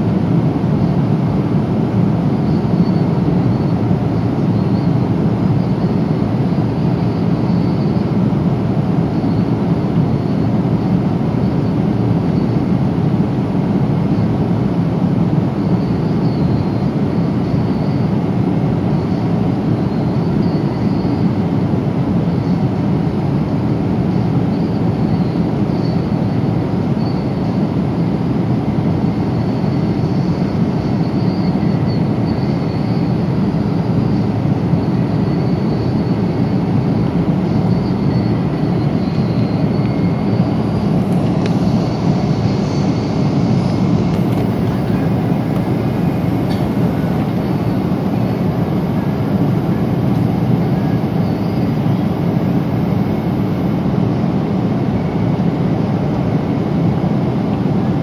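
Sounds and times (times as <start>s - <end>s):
airflow and engine drone: 0.0s - 58.0s
faint high whine: 0.0s - 58.0s.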